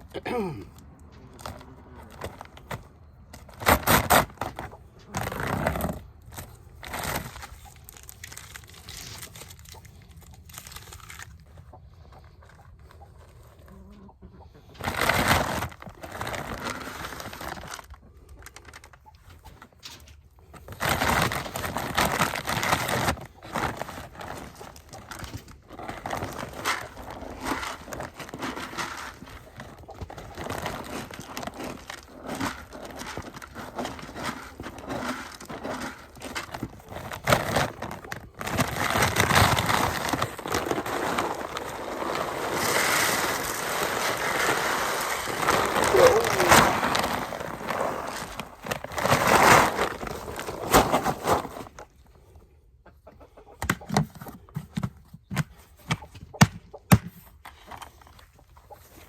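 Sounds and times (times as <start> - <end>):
feed rustling and pouring: 1.2 - 13.7, 14.7 - 52.0
chickens calling softly: 52.8 - 53.9.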